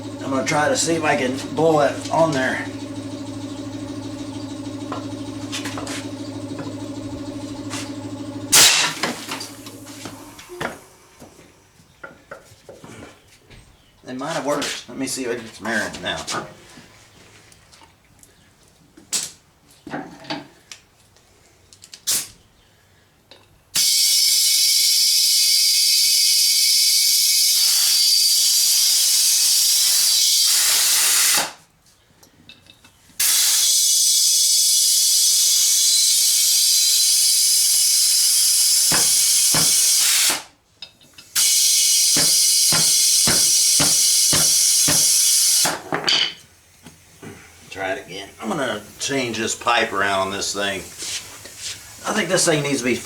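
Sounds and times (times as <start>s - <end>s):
compressed air hissing: 0.0s - 11.2s, 27.4s - 31.6s, 33.2s - 40.5s, 41.4s - 45.8s, 48.3s - 53.0s.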